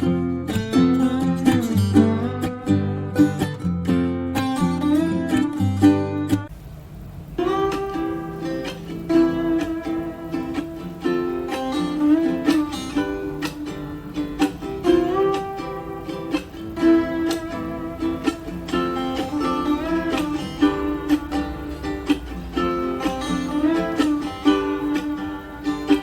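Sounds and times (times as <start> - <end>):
plucked-string riff with beat: 0.0 - 26.0.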